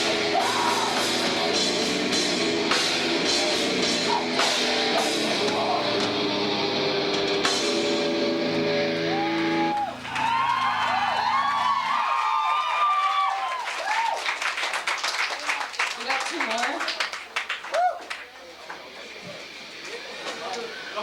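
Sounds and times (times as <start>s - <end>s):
crowd cheering: 0.0s - 1.7s, 8.9s - 19.2s
live rock band playing: 0.0s - 10.7s.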